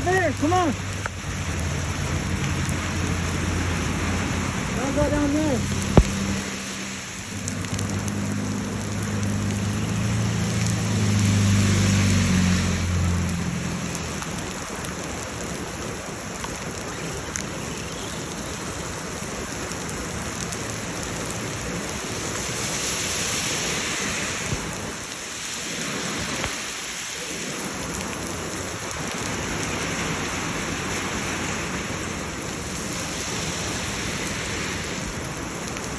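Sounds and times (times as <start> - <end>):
water running in a gutter: 0.0 - 25.2
heavy rain falling: 0.0 - 35.9.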